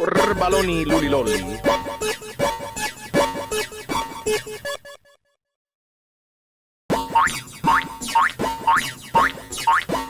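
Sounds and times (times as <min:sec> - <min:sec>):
steady low note: 0:00.3 - 0:02.0.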